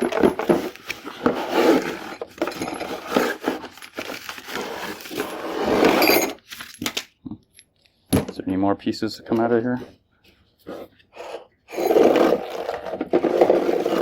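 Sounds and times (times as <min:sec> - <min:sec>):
parts knocking and clinking: 0:00.0 - 0:04.4
packaging rustling: 0:03.0 - 0:05.2.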